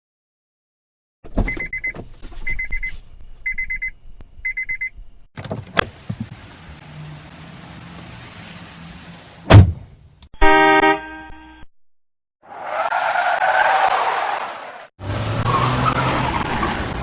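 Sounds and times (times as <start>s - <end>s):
car warning chime beeping: 1.5s - 5.0s
sharp thump: 9.5s - 9.9s.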